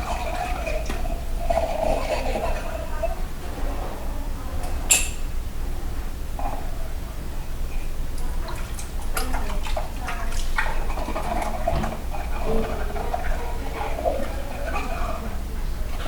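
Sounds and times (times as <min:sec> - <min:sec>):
water splashing and dripping: 0:08.2 - 0:14.4
dishes clicking and knocking: 0:08.8 - 0:15.1.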